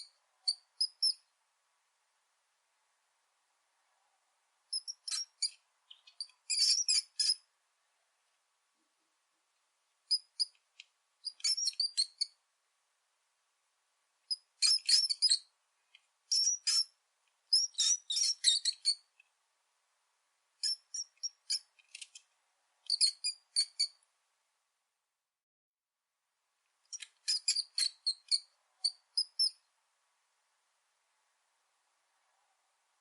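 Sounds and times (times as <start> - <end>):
rat squeaking: 0.0 - 1.3, 4.7 - 7.5, 10.1 - 10.6, 11.2 - 12.4, 14.3 - 15.5, 16.3 - 19.1, 20.6 - 22.2, 22.8 - 24.0, 26.9 - 29.7.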